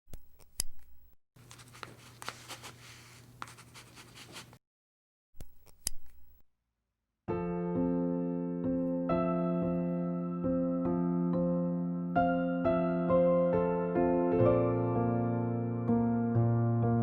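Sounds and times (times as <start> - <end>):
soft electric piano music: 7.3 - 17.0.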